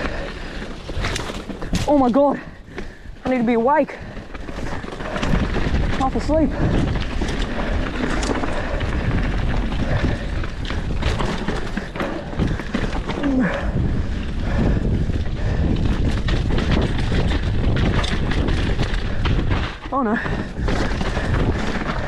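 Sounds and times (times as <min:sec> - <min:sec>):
tyres rumbling on dirt: 0:00.0 - 0:14.2
bike rattling over bumps: 0:00.0 - 0:22.0
wind on microphone: 0:00.0 - 0:22.0.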